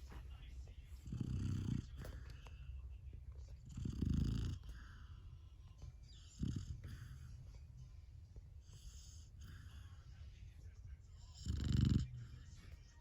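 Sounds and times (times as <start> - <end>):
puppy snoring: 1.0 - 2.4, 3.6 - 5.1, 6.1 - 7.4, 8.6 - 10.1, 11.2 - 13.0
soft breathing: 4.6 - 6.0, 6.7 - 10.4.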